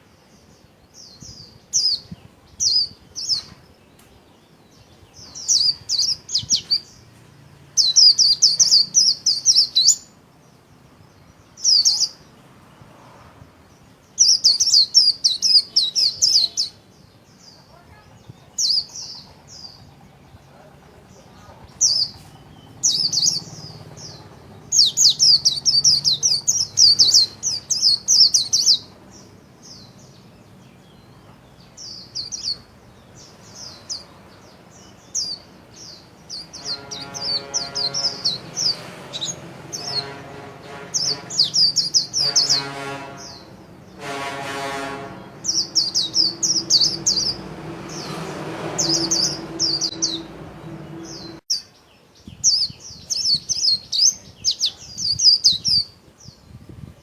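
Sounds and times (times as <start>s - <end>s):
bird twittering song: 0.0s - 7.2s, 7.8s - 12.4s, 13.7s - 56.9s.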